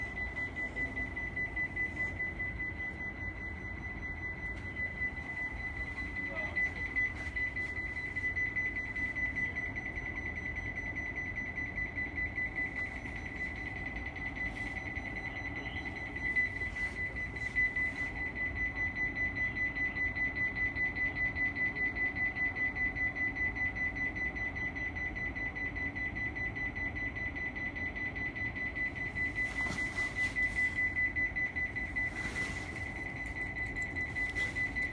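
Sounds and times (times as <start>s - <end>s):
low station rumble: 0.0s - 10.2s, 28.8s - 34.9s.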